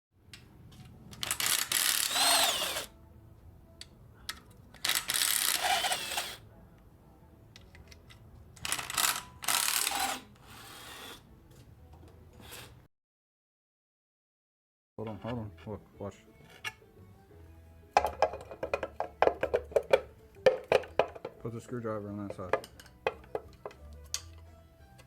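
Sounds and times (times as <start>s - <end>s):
power drill spinning: 1.2s - 2.9s, 4.8s - 6.4s, 8.6s - 11.2s.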